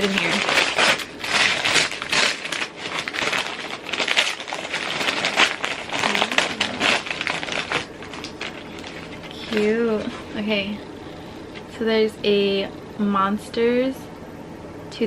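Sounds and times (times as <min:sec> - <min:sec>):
gift wrapping crinkling: 0:00.0 - 0:10.4.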